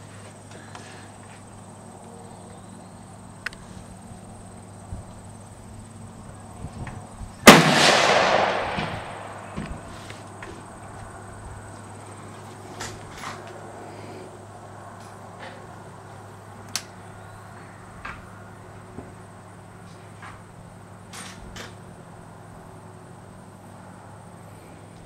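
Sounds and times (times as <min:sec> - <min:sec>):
rifle shot echoing: 0:07.4 - 0:09.6.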